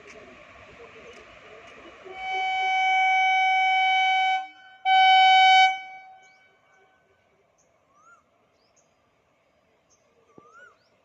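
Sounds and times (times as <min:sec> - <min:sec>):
locomotive air horn blasts: 0:02.1 - 0:06.5
faint bird calls: 0:09.9 - 0:11.0.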